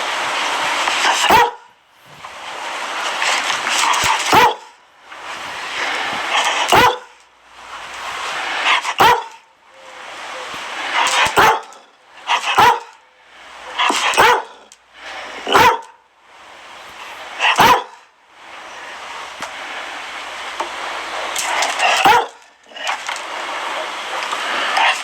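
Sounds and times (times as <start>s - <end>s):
rushing noise: 0.0s - 25.0s
dog barking: 1.0s - 1.7s, 4.1s - 4.7s, 6.3s - 7.2s, 8.6s - 9.5s, 10.4s - 14.7s, 15.4s - 16.0s, 17.4s - 18.0s, 21.8s - 22.4s.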